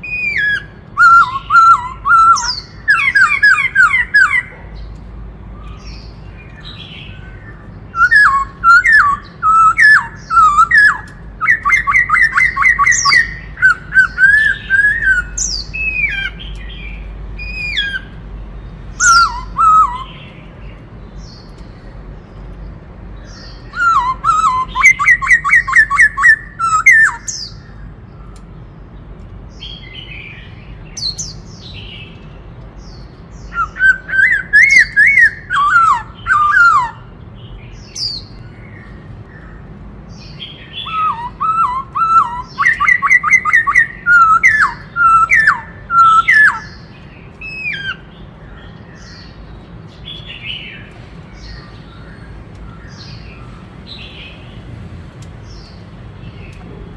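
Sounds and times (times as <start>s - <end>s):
bird singing whistled notes: 0.0s - 4.9s, 5.6s - 21.6s, 23.2s - 28.4s, 29.5s - 39.5s, 40.1s - 54.5s.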